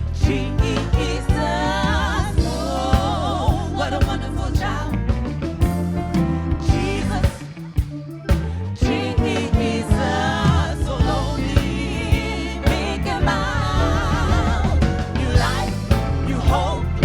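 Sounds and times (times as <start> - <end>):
bass: 0.0 - 17.0
drum beat: 2.2 - 17.0.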